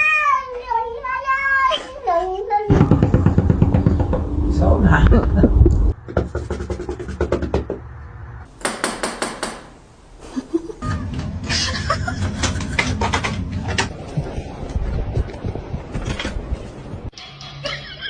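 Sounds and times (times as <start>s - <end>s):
rapid knocking: 2.7s - 4.6s, 5.6s - 7.8s.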